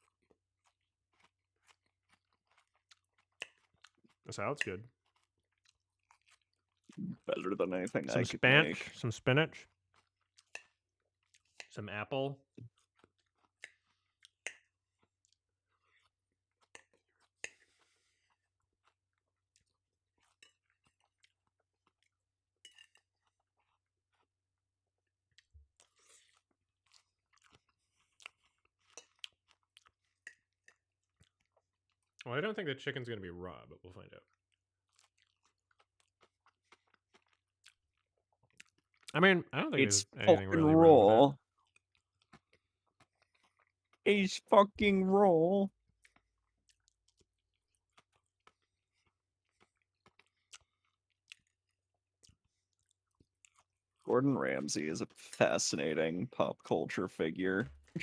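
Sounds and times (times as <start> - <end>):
person chewing crunchy food: 0.0 - 4.2, 4.9 - 8.8, 9.6 - 11.7, 12.6 - 24.4, 25.3 - 32.2, 34.2 - 39.2, 40.7 - 44.0, 46.0 - 54.0.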